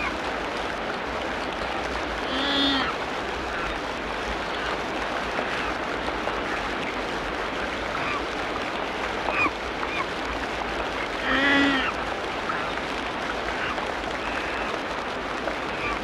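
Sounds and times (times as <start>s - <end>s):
loud nasal quacking animal call: 2.3s - 2.9s, 11.2s - 11.9s.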